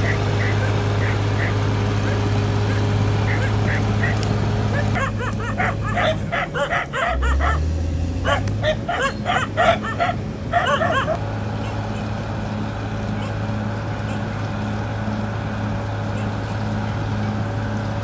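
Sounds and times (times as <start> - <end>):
animal giving short calls: 0.0 - 12.1
bulldozer diesel engine running: 0.0 - 18.0.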